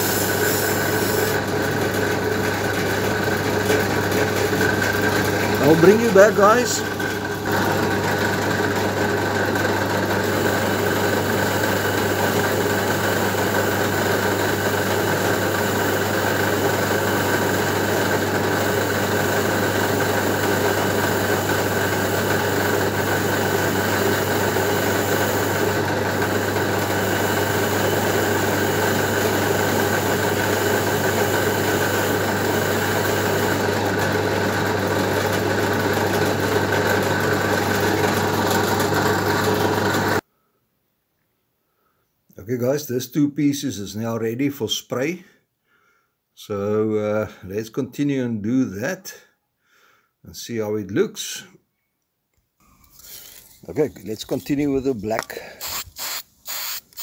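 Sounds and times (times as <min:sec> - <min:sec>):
motor humming: 0:55.4 - 0:57.0.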